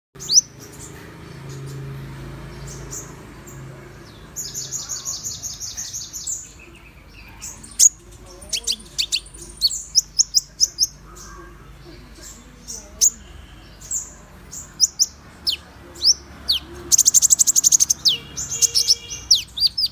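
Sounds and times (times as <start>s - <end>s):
sharp high bird chirps: 0.2s - 1.0s, 7.2s - 11.0s, 13.0s - 19.9s
bird singing fast high trill: 13.8s - 19.9s.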